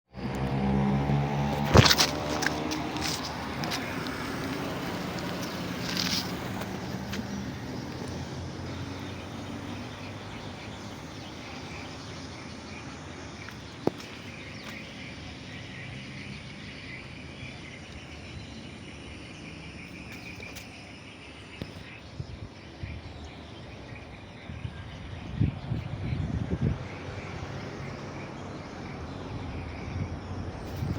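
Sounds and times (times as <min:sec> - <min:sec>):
low bumps: 0:00.2 - 0:12.0.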